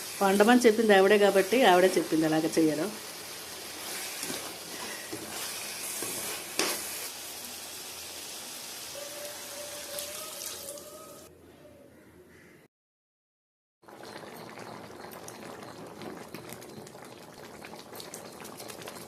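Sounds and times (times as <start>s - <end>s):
curry sizzling and bubbling in a pan: 0.0s - 9.2s, 13.9s - 19.0s.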